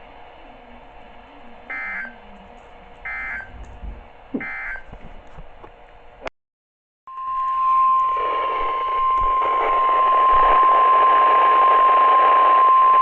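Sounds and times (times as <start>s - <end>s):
warbling digital data tones: 7.1s - 11.8s.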